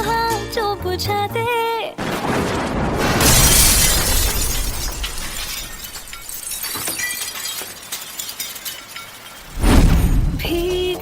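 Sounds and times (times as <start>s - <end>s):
pop song: 0.0s - 2.0s, 10.4s - 11.0s
glass-like crash: 2.0s - 11.0s
tinkling clicks: 5.7s - 9.6s.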